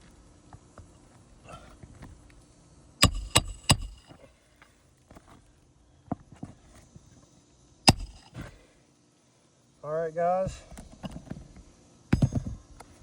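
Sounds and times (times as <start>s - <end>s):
hammer striking a roof: 3.0s - 4.2s, 7.9s - 8.5s.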